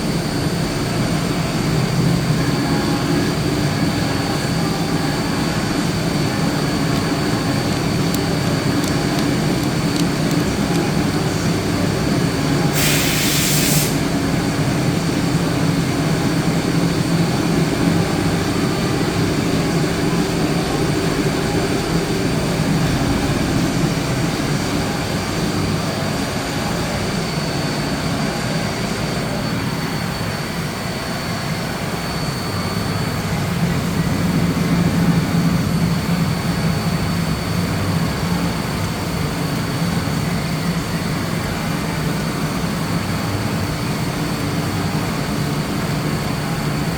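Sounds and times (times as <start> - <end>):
high whine: 0.0 - 46.9
burst of hiss: 12.7 - 14.1.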